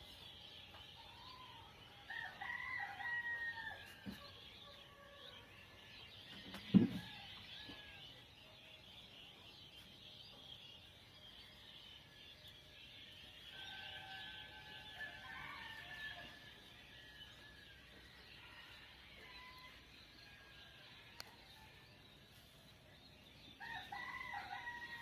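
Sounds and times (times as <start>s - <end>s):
dawn bird chorus: 0.0s - 25.0s
distant rooster crowing: 1.1s - 8.2s, 13.5s - 21.9s, 23.6s - 25.0s.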